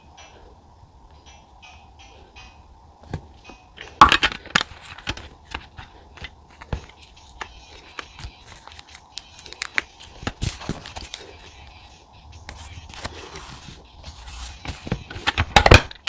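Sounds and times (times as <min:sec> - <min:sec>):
paper crinkling and tearing: 0:06.5 - 0:11.6, 0:12.5 - 0:15.9.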